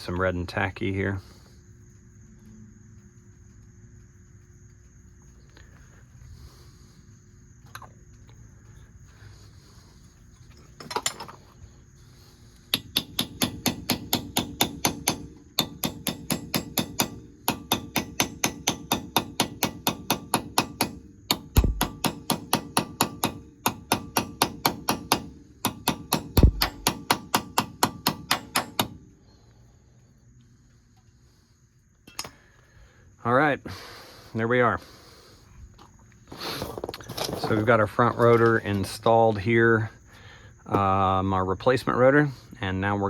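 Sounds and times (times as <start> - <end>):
heavy hammer blows: 12.7 - 29.0.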